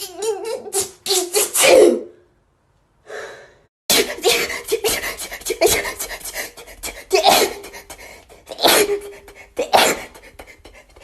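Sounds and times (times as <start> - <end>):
girl sneezing: 0.5 - 2.2, 3.9 - 6.0, 7.0 - 7.8, 8.5 - 10.2
breathy gasp: 3.0 - 5.4.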